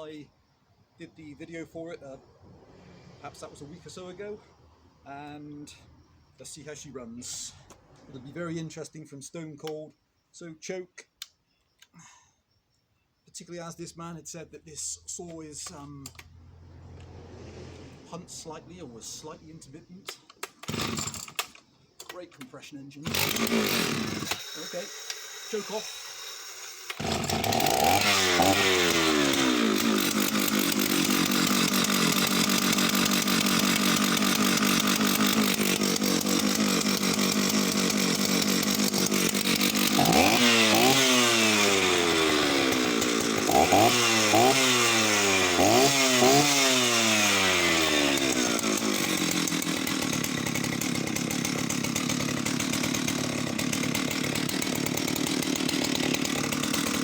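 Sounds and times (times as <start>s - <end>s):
chainsaw running and revving: 16.1s - 19.0s, 20.4s - 21.6s, 23.0s - 57.0s.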